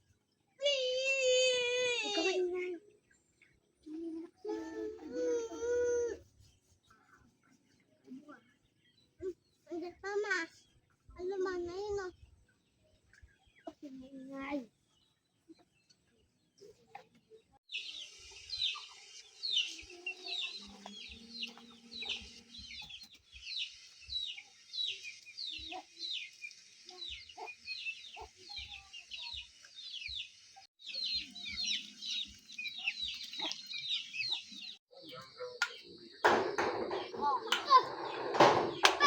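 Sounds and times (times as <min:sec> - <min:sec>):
chicks peeping: 0:17.7 - 0:39.0.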